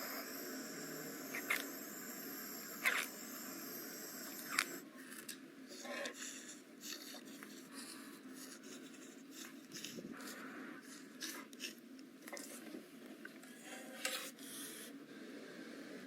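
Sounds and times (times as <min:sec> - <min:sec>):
faint high whine: 0:00.0 - 0:05.1.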